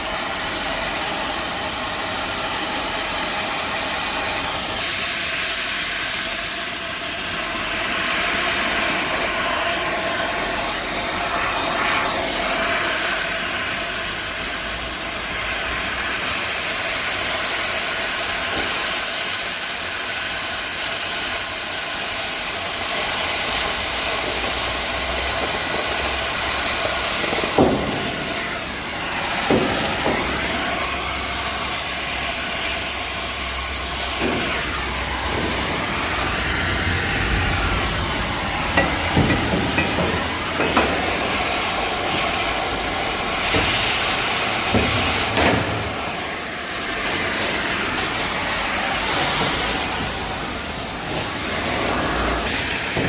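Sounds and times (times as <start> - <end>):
steady loud hiss: 0.0 - 53.0
short knocks: 38.7 - 41.4.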